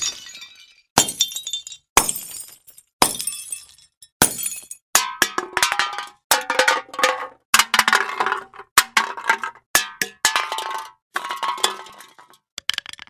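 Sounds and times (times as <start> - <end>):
metal objects clattering: 10.3 - 13.0.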